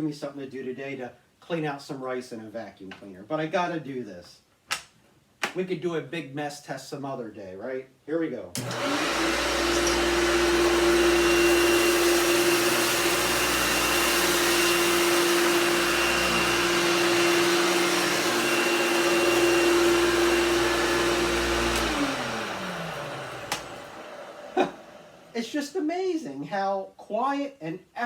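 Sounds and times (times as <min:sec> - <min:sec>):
vacuum cleaner sucking up rice: 0:08.6 - 0:25.6.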